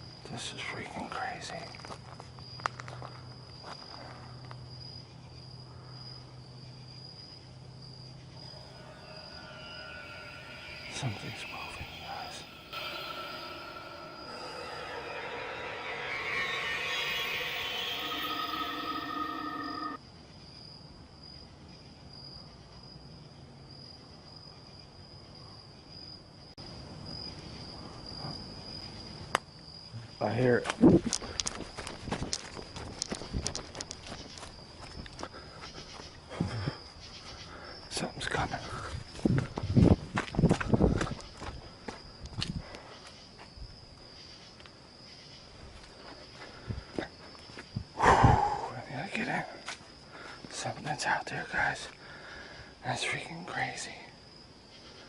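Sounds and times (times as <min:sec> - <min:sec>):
crickets trilling: 0:00.0 - 0:20.0, 0:25.9 - 0:55.0
loud droning hum: 0:08.5 - 0:20.0.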